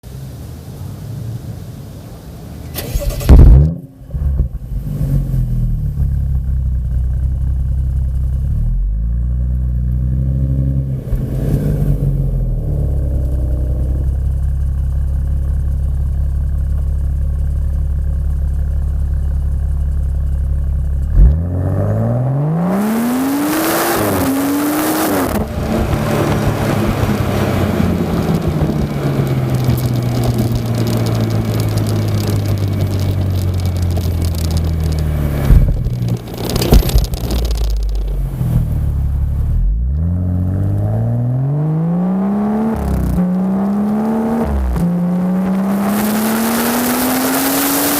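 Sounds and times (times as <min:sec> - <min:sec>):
car engine starting and idling: 0:00.3 - 0:47.9
engine revving: 0:21.1 - 0:47.9.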